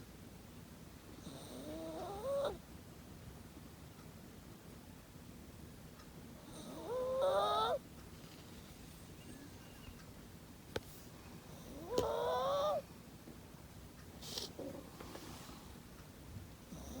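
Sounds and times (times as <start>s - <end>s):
dog snoring: 1.1s - 2.6s, 6.4s - 7.8s, 11.5s - 12.8s, 16.7s - 17.0s.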